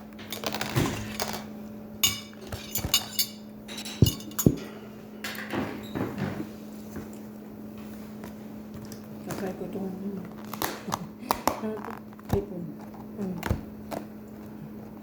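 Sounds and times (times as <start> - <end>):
steady low hum: 0.0 - 15.0
cutlery and plates clinking: 0.2 - 5.5.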